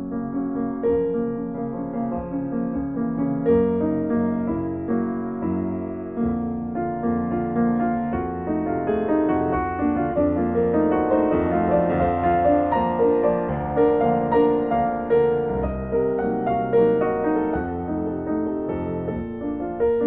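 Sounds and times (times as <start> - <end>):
piano music: 0.0 - 20.0.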